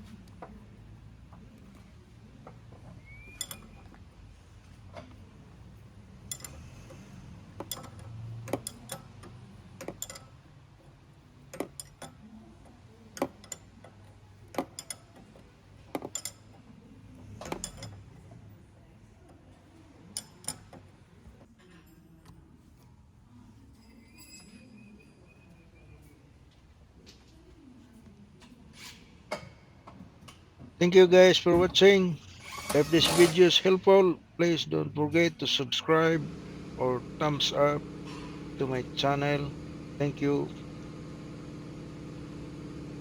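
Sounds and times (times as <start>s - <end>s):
brief squeak: 3.0s - 3.9s, 23.8s - 26.2s
low steady hum: 30.8s - 43.0s.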